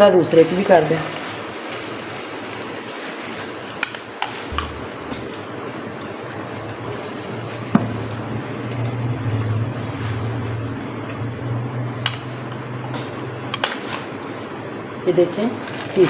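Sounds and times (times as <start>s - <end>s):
steady low hiss: 0.0s - 16.0s
low hum: 4.5s - 14.8s.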